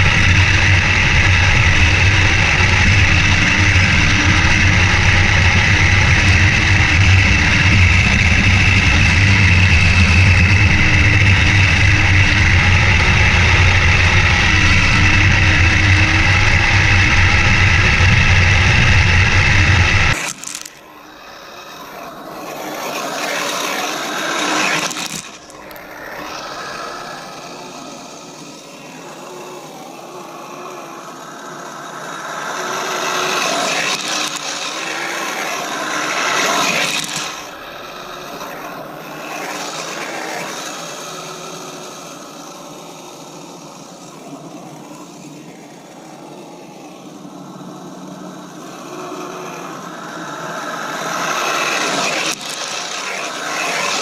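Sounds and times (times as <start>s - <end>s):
track noise: 0.0s - 40.5s
toy vehicle motor and gear whine: 0.0s - 54.0s.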